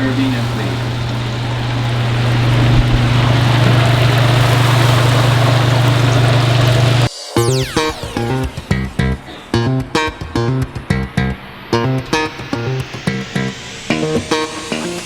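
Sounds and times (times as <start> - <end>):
kitchen equipment hum: 0.0 - 7.1
oil sizzling in a fryer: 0.0 - 7.1, 12.2 - 15.0
guitar music: 6.1 - 15.0.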